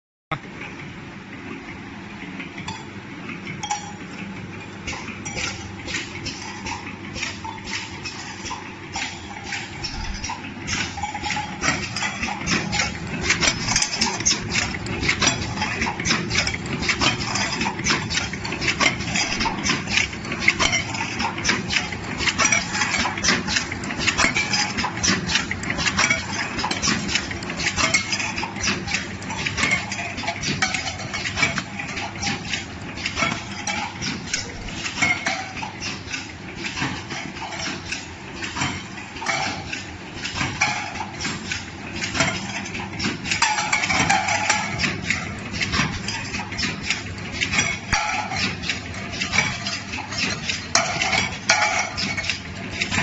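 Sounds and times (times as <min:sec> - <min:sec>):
steady low machine noise: 0:00.3 - 0:53.0
sharp metal clicks clattering: 0:02.6 - 0:53.0.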